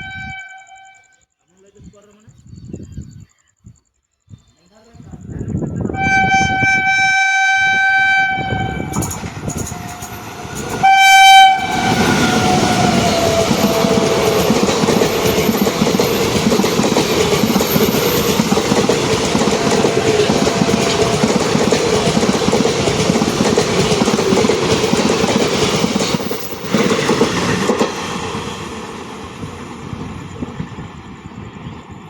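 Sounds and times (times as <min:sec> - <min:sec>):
train horn blasts: 0:00.0 - 0:01.2, 0:05.9 - 0:14.6, 0:19.5 - 0:21.7
train coaches rattling past: 0:06.0 - 0:32.0.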